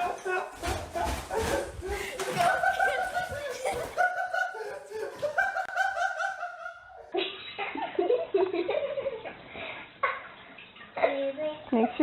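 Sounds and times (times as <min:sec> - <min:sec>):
person laughing: 0:01.3 - 0:07.9.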